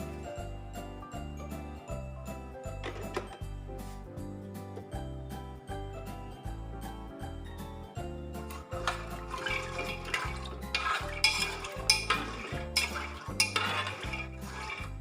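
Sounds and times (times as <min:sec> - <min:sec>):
spoon scraping and clinking pot: 0:08.5 - 0:15.0.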